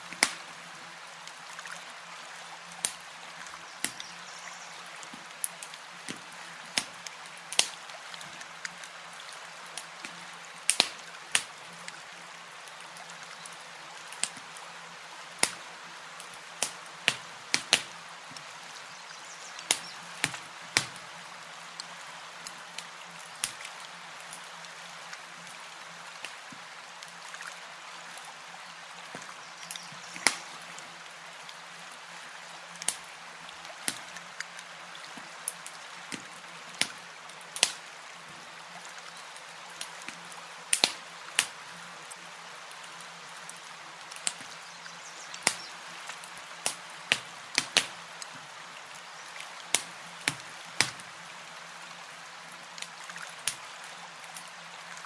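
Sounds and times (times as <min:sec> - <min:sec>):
steady hiss: 0:00.0 - 0:55.0
campfire crackling and popping: 0:00.1 - 0:00.5, 0:02.8 - 0:04.2, 0:05.0 - 0:07.9, 0:09.7 - 0:11.6, 0:14.0 - 0:14.6, 0:15.3 - 0:18.5, 0:19.5 - 0:21.1, 0:21.8 - 0:24.5, 0:29.1 - 0:30.7, 0:32.8 - 0:33.2, 0:33.8 - 0:34.7, 0:35.4 - 0:37.8, 0:39.8 - 0:42.2, 0:42.8 - 0:48.4, 0:49.7 - 0:51.2.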